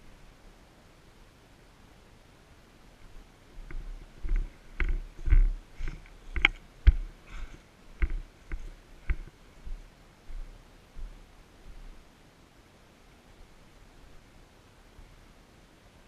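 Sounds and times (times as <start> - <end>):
footsteps crunching on trail: 3.6 - 11.9.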